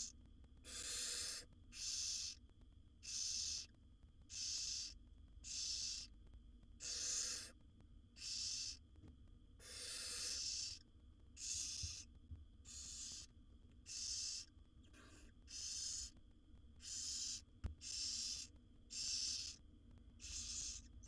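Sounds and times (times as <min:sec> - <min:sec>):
owl nestlings hissing: 0:00.0 - 0:02.4, 0:03.0 - 0:03.7, 0:04.3 - 0:06.1, 0:06.8 - 0:07.6, 0:08.2 - 0:08.8, 0:09.6 - 0:10.8, 0:11.4 - 0:16.2, 0:16.8 - 0:19.6, 0:20.2 - 0:21.0.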